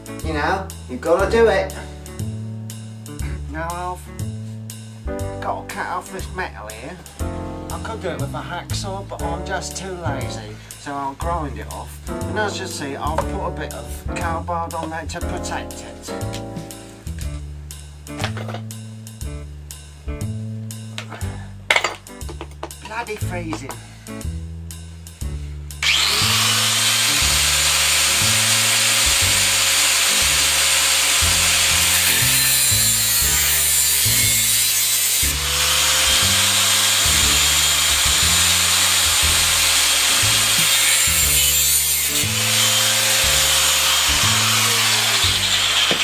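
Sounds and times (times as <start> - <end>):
background music bass line: 0.0 - 46.0
power grinder cutting metal: 25.8 - 46.0.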